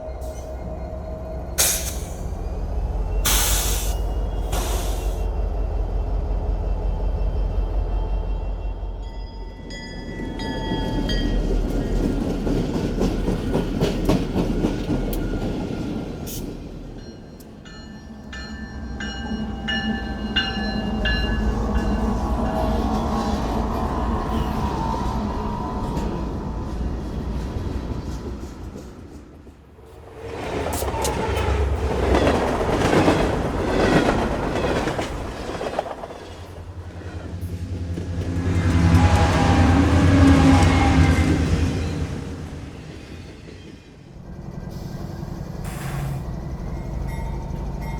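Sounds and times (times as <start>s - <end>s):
freight train cars rolling: 0.0s - 47.9s
wheels clacking over rail joints: 26.0s - 43.9s.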